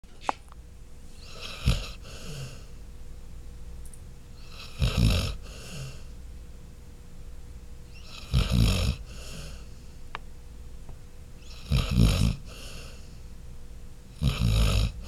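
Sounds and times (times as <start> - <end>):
dog snoring: 1.2 - 2.8, 4.4 - 6.1, 7.9 - 9.7, 11.4 - 13.1, 14.1 - 15.0.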